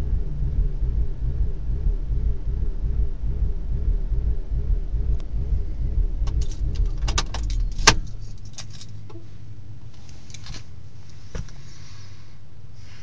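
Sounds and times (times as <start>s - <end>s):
car engine idling roughly: 0.0s - 12.2s
steady hum: 0.0s - 13.0s
keys jangling: 6.3s - 9.1s.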